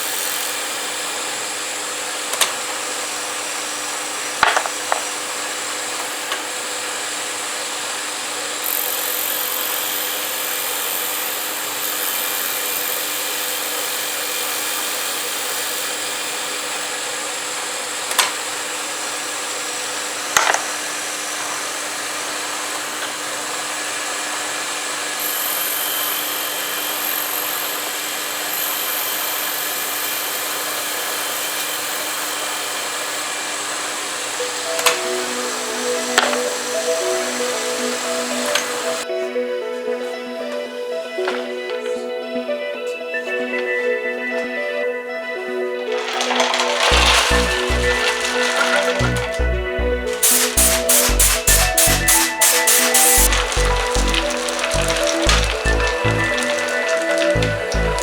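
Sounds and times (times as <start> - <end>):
cutting tool hiss: 0.0 - 20.0, 20.8 - 39.0, 46.8 - 57.9
lathe humming: 21.2 - 39.1, 45.7 - 58.0.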